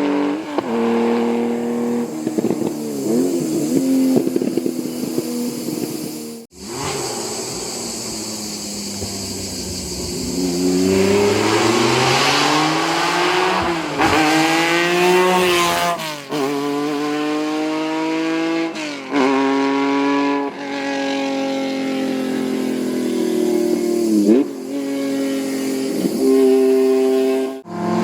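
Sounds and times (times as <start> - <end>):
racing car engine accelerating: 0.0 - 28.0.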